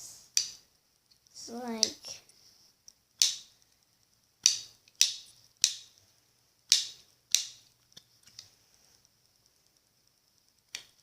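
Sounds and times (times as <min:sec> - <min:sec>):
plastic toy piece clicking: 0:03.2 - 0:03.7, 0:04.4 - 0:05.9, 0:06.7 - 0:07.6.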